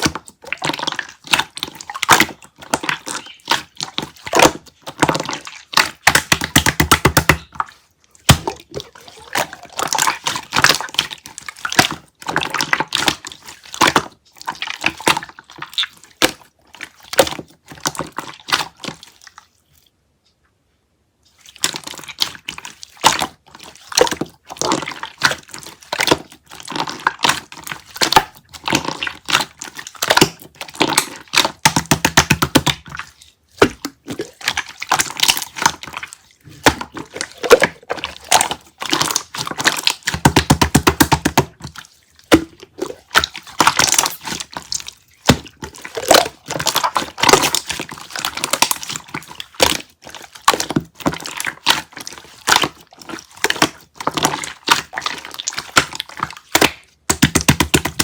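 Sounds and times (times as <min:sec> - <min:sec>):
wet irregular clicking and tapping: 0:00.0 - 0:20.5, 0:21.3 - 0:58.0.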